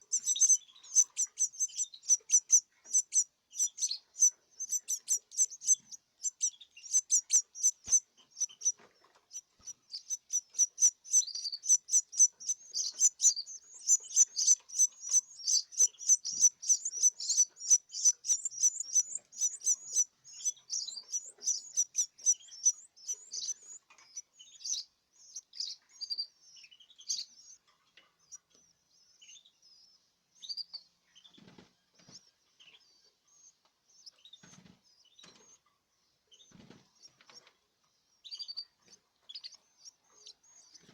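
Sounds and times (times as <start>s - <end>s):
canary chicks chirping: 0.0s - 40.9s.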